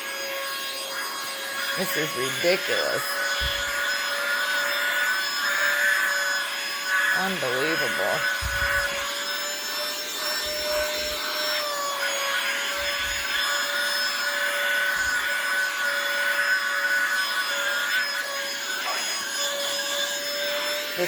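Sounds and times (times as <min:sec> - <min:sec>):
handheld vacuum cleaner whine: 0:00.0 - 0:21.0
dull bumps of vacuum nozzle: 0:03.3 - 0:03.9, 0:08.2 - 0:09.2, 0:12.6 - 0:13.6.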